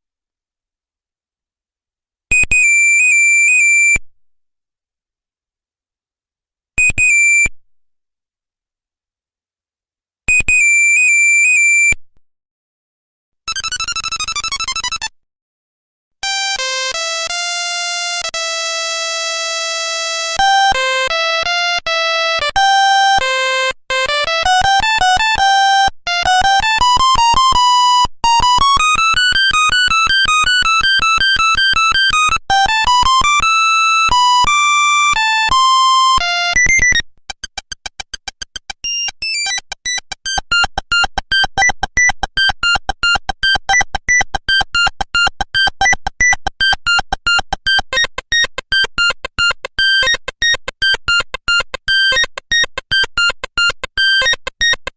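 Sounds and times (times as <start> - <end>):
monophonic ringtone melody: 34.1 - 54.4.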